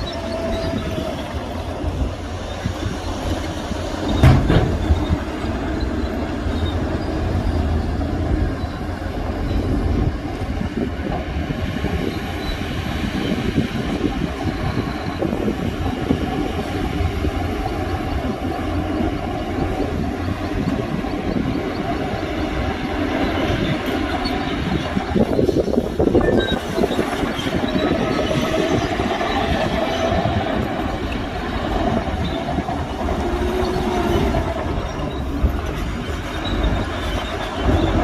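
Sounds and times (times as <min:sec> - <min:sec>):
diesel machinery rumbling: 0:00.0 - 0:38.0
machinery clanking: 0:02.8 - 0:09.7.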